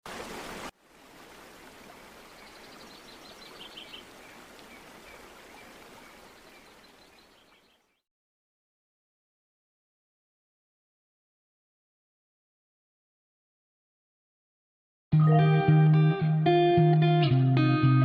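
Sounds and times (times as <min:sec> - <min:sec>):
birds chirping: 0:01.3 - 0:08.0.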